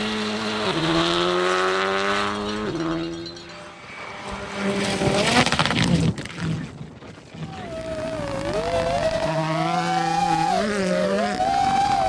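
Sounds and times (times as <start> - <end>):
rally car engine revving: 0.0 - 6.4, 7.5 - 12.0
exhaust crackling: 7.5 - 12.0.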